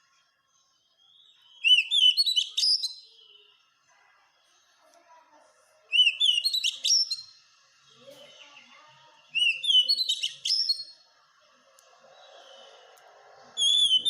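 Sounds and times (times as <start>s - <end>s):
bird singing whistled notes: 1.0s - 3.6s, 5.9s - 7.4s, 9.2s - 11.1s, 13.5s - 14.0s.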